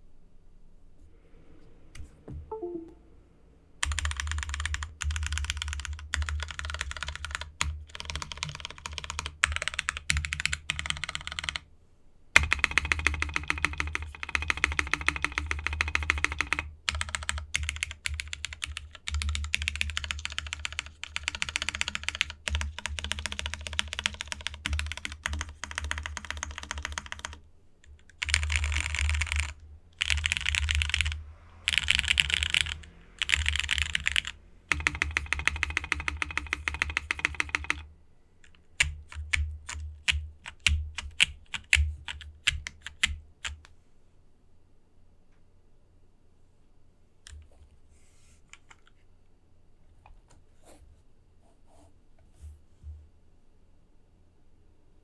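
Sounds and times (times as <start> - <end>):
typing on mechanical keyboard: 3.8 - 11.6, 12.4 - 37.8, 38.4 - 43.7, 48.5 - 48.9.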